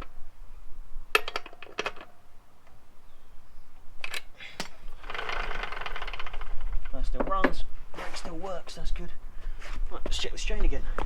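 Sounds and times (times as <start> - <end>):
bike chain rattling over sprockets: 4.9 - 7.4.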